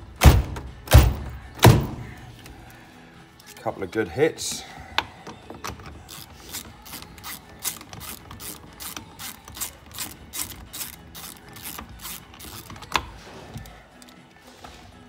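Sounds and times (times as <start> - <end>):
socket ratchet clicking: 5.3 - 14.2.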